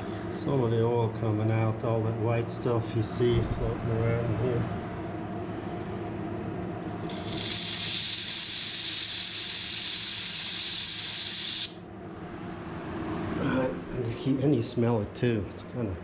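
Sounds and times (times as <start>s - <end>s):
air compressors humming: 2.6s - 11.8s
compressed air hissing out: 6.8s - 11.8s.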